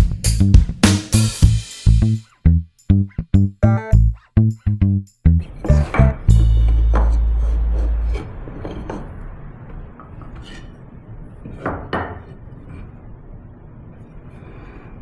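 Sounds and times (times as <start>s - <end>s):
music bass note: 0.0s - 8.9s.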